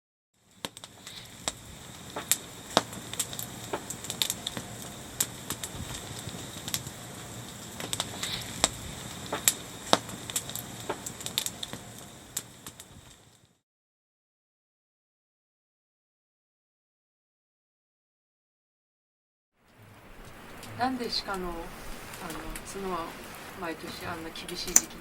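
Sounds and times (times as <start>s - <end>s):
campfire crackling and popping: 0.4s - 13.6s, 19.6s - 25.0s.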